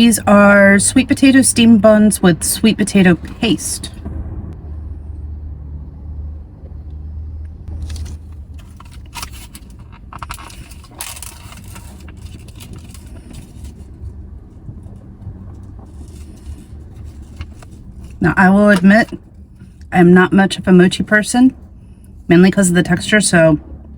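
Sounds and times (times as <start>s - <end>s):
low rumble inside car: 0.0s - 23.9s
plastic packaging crinkling: 7.8s - 13.9s.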